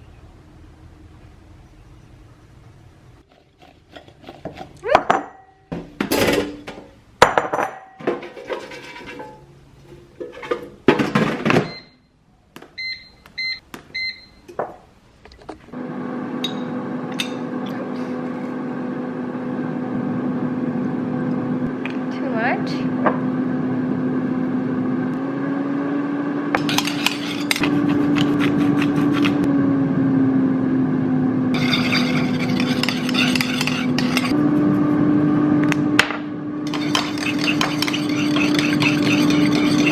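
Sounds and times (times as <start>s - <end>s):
kitchenware clattering: 4.0s - 11.8s, 26.6s - 29.4s, 31.6s - 34.4s, 36.7s - 39.9s
microwave oven humming: 15.7s - 22.1s, 22.7s - 26.6s, 29.3s - 31.6s, 34.2s - 36.8s.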